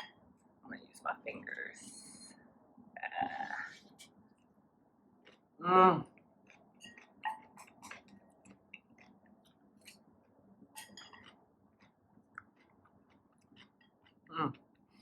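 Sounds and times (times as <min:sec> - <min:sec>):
wet chewing and mouth clicks: 0:05.2 - 0:05.5, 0:06.1 - 0:15.0.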